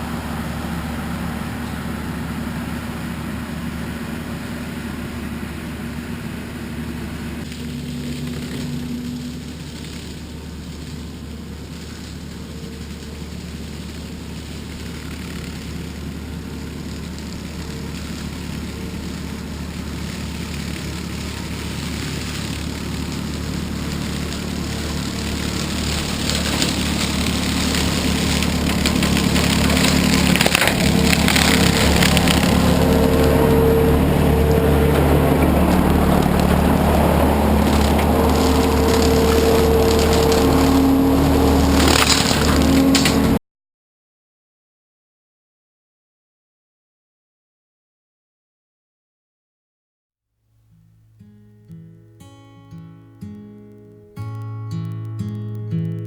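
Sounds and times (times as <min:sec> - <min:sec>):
brush mower cutting weeds: 0:00.0 - 0:43.4, 0:51.7 - 0:56.0
skid steer engine under load: 0:00.0 - 0:43.4.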